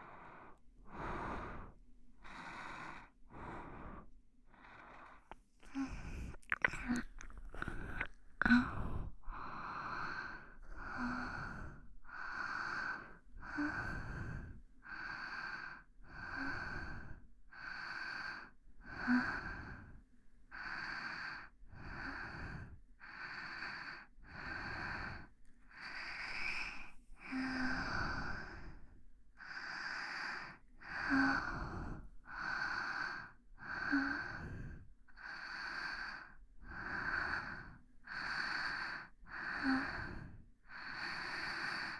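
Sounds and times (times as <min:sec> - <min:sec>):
person breathing: 0:00.0 - 0:14.6, 0:25.8 - 0:28.9.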